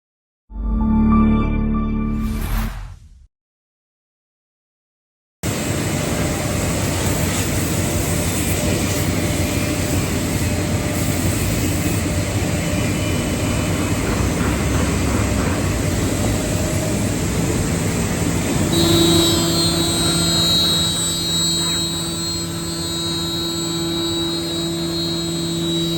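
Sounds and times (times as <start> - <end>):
steady machine whine: 5.5 - 25.9
wood router machine running: 15.8 - 25.9.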